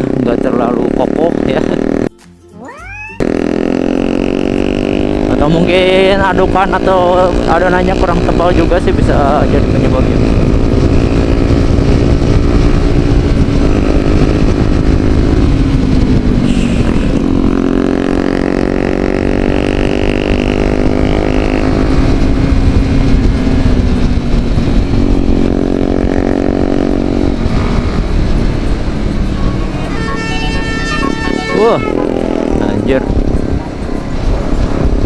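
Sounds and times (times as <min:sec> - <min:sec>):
road and wind rumble: 0:00.0 - 0:35.0
vehicle engine running: 0:03.2 - 0:35.0.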